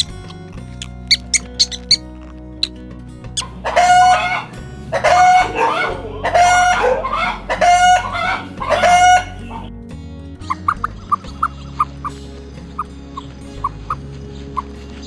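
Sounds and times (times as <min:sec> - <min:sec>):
background music: 0:00.0 - 0:15.0
chicken calling: 0:03.4 - 0:09.7.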